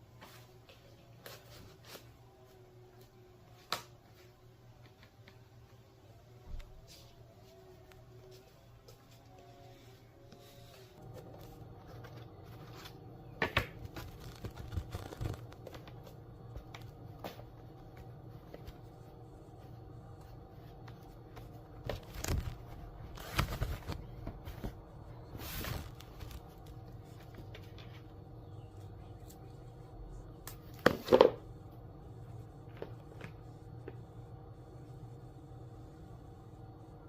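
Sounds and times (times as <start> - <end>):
faint steady hum: 0.0 - 37.0
rustling veneer sheets: 20.9 - 28.0.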